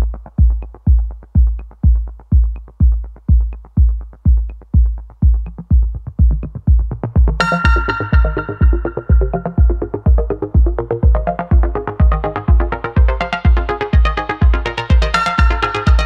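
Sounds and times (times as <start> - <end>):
deep kick drum: 0.0 - 16.0
electronic music with drum-machine beat: 0.0 - 16.0
bright synthesizer chord: 7.4 - 10.5.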